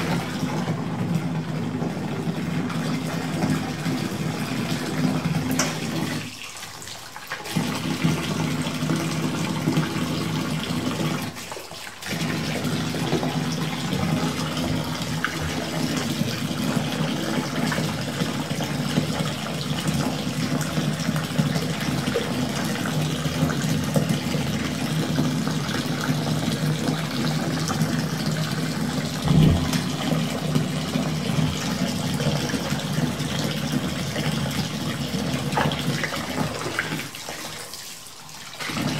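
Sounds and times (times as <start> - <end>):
water gushing into bathtub: 0.0 - 38.9
sharp thump: 29.3 - 30.2.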